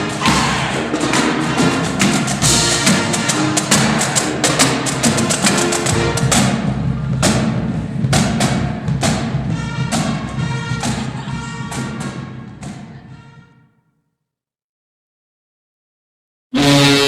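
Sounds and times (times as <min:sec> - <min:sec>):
upbeat music with heavy drums: 0:00.0 - 0:13.2.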